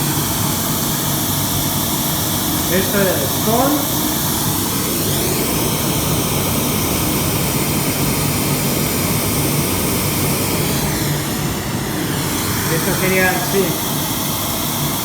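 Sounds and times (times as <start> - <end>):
pink noise through speaker: 12.7 - 13.8.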